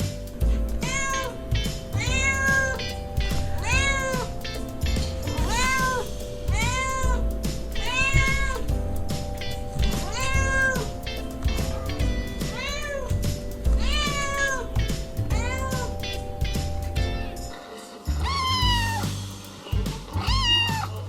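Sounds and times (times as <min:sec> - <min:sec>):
background music with low bass: 0:00.0 - 0:21.0
cat meowing: 0:00.8 - 0:04.4, 0:05.3 - 0:08.7, 0:09.8 - 0:16.2, 0:18.2 - 0:19.1, 0:20.2 - 0:21.0.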